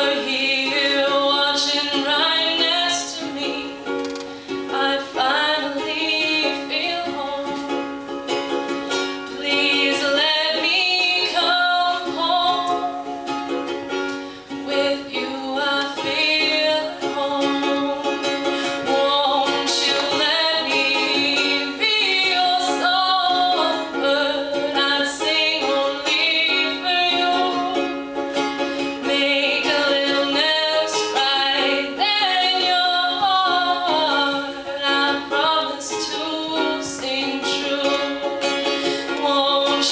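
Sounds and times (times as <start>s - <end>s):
ukulele playing: 0.0s - 39.9s
person singing: 8.7s - 13.8s, 14.4s - 39.9s.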